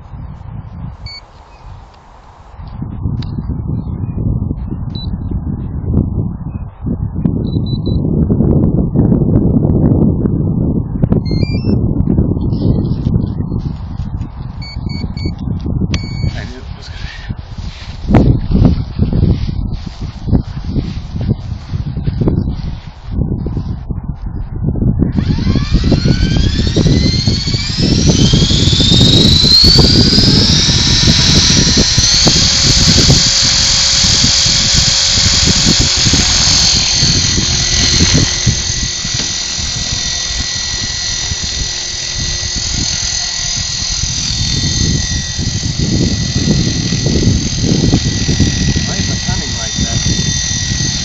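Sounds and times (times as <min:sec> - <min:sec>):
wind buffeting microphone: 0:00.0 - 0:51.0
model helicopter engine whine: 0:11.1 - 0:23.6, 0:25.0 - 0:51.0.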